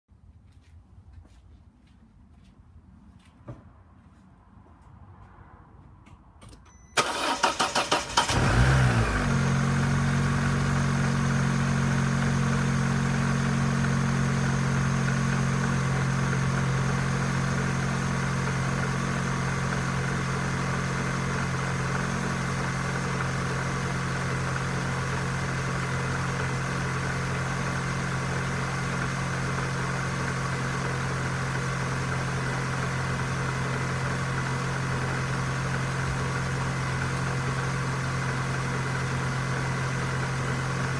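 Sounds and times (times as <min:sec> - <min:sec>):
car engine cranking: 0:06.4 - 0:09.3
car engine idling: 0:07.0 - 0:40.9.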